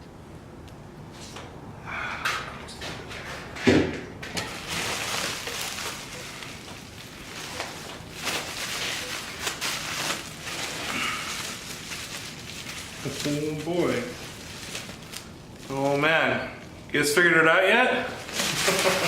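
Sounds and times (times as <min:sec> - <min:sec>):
packing material rustling: 0:04.4 - 0:16.0, 0:18.1 - 0:19.0.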